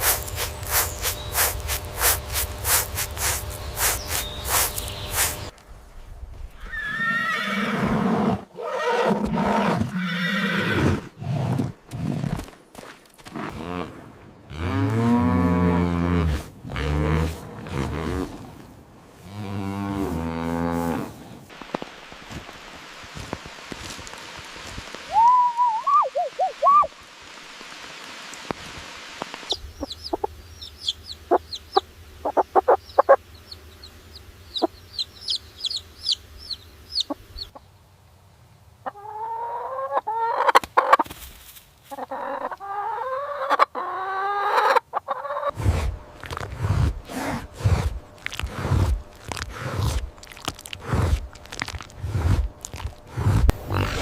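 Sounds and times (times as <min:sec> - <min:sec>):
chickens clucking and chirping: 0:00.3 - 0:05.5, 0:29.5 - 0:37.7, 0:38.8 - 0:41.0, 0:41.9 - 0:45.6.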